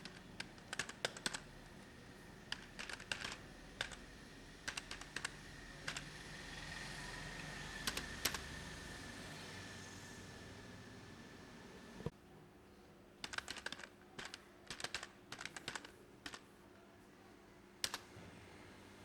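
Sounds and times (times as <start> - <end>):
computer keyboard typing: 0.0 - 1.6, 2.5 - 6.2, 7.8 - 8.5, 13.2 - 16.5, 17.8 - 18.1.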